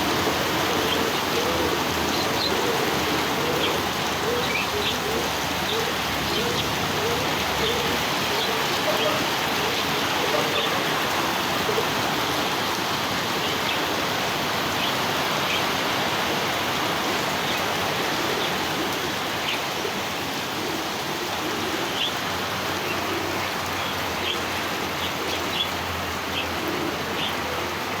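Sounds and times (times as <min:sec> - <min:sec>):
pigeons cooing: 0:00.0 - 0:28.0.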